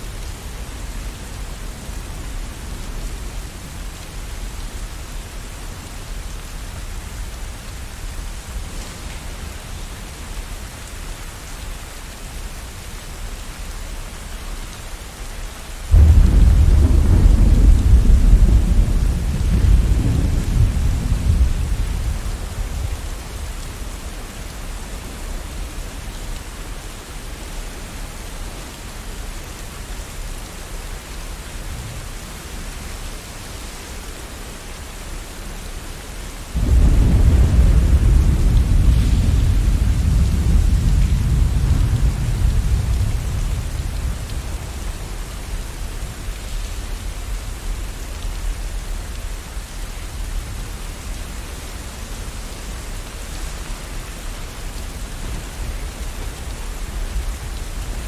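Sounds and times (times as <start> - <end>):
steady rain: 0.0 - 58.0
thunder clap and rumble: 15.9 - 23.6, 36.6 - 47.7.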